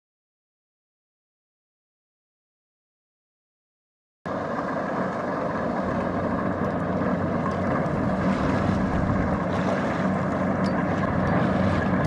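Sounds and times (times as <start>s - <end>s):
combine harvester diesel engine hum: 4.3s - 12.0s.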